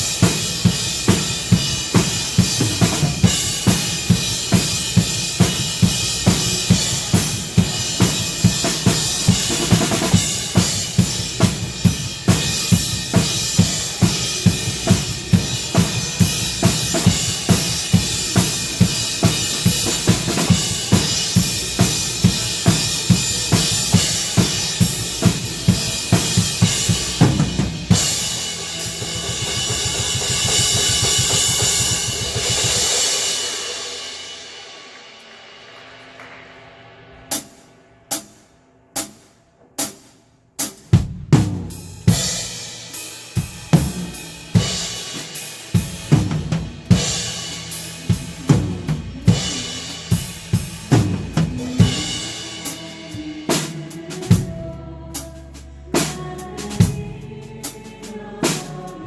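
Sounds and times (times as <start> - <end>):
worship band music: 0.0 - 40.0, 40.6 - 59.0
drum kit playing a beat: 0.0 - 59.0
cymbal wash: 41.8 - 55.9.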